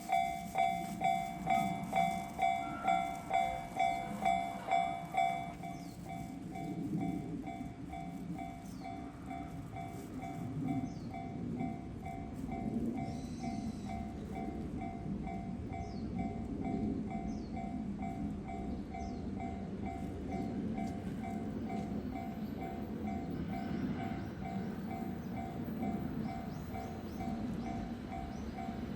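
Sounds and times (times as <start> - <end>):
electric train rumbling past: 0.0 - 28.9
level crossing bell ringing: 0.1 - 5.7.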